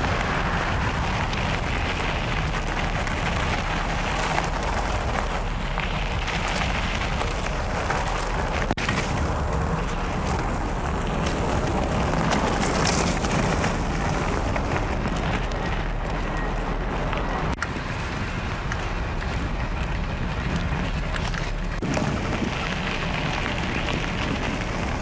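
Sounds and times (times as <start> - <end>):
handlebar rattle: 0.0 - 25.0
tyres rolling on gravel: 0.0 - 25.0
wind on microphone: 0.0 - 25.0.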